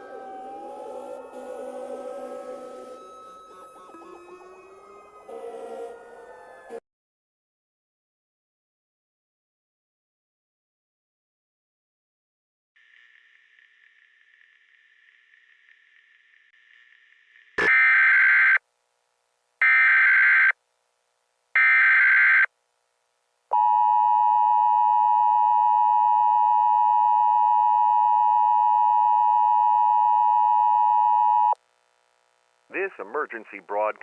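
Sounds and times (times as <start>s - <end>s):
emergency attention tone: 0.0s - 6.8s, 23.5s - 31.6s
faint static: 12.8s - 19.7s, 20.5s - 21.6s, 22.5s - 25.0s, 31.5s - 34.0s.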